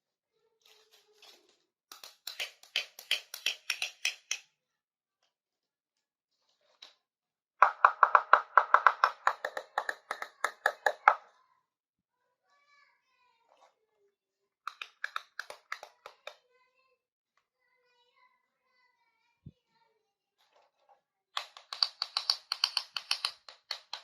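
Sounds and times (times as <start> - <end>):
light tapping on miniature kitchenware: 1.9 - 4.5, 7.6 - 11.2, 14.7 - 16.4, 21.4 - 24.0.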